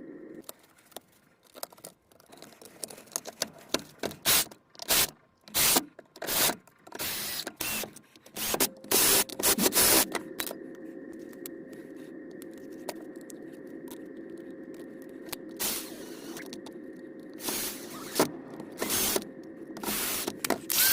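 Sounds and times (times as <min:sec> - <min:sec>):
steady hum: 0:00.0 - 0:00.4, 0:07.0 - 0:20.9
clicks and scrapes of tools: 0:00.4 - 0:10.6.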